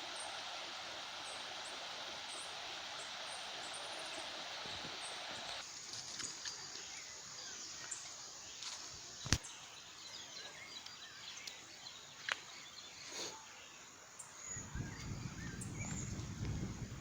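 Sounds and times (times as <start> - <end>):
steady outdoor hiss: 0.0 - 17.0
faint bird chirps: 6.2 - 17.0.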